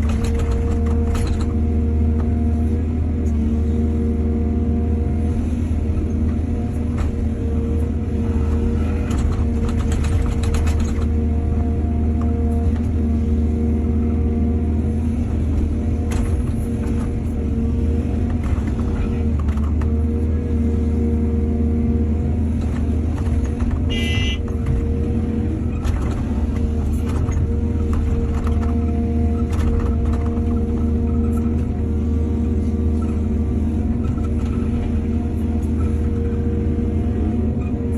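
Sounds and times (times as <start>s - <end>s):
clanks and knocks from digging: 0.0s - 1.6s, 9.0s - 11.2s
excavator diesel engine running: 0.0s - 37.9s.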